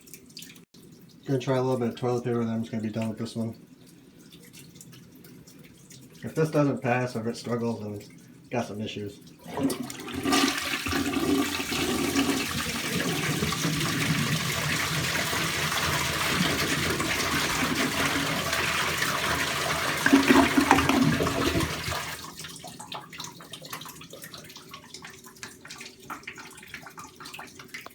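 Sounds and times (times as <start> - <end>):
toilet tank refilling trickle: 0.0 - 27.9
toilet flushing: 9.4 - 27.8.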